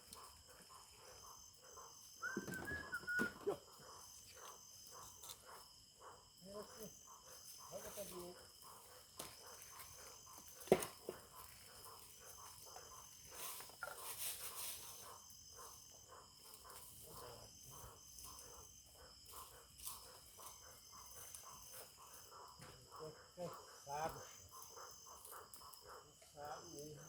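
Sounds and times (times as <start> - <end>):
faint irregular ticks: 0.0 - 1.9
crickets chirring: 0.0 - 27.0.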